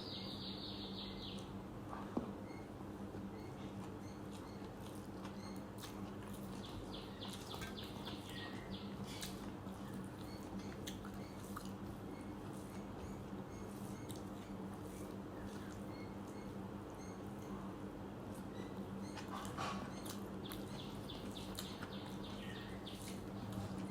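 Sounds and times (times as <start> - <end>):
steady low hum: 0.0 - 23.9
person chewing: 3.7 - 11.9, 20.0 - 23.9.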